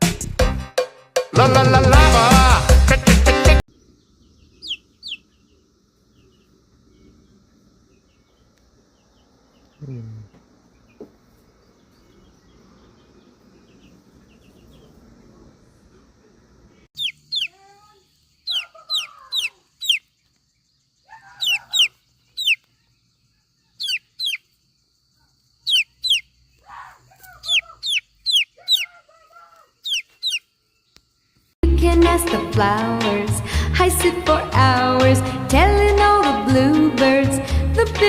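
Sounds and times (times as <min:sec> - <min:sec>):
chickens clucking: 0:03.7 - 0:17.7, 0:18.4 - 0:20.3, 0:21.1 - 0:24.6, 0:25.6 - 0:30.5
chicks peeping: 0:03.7 - 0:20.4, 0:21.0 - 0:31.0.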